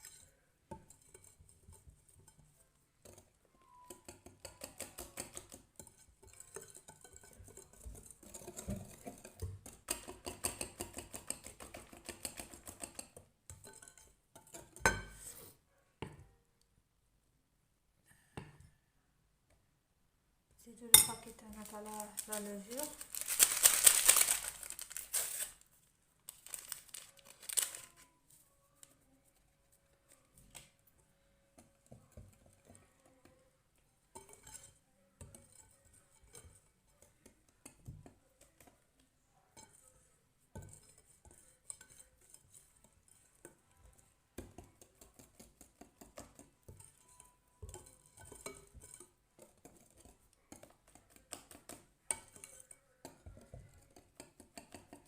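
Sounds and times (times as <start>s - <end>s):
utensil scraping mixing bowl: 0.0s - 15.6s, 34.1s - 38.8s, 39.5s - 55.0s.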